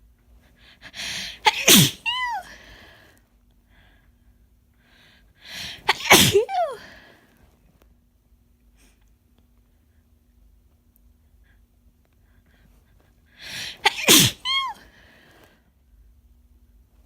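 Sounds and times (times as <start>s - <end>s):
woman sneezing: 1.2s - 2.8s, 5.6s - 7.0s, 13.5s - 14.9s.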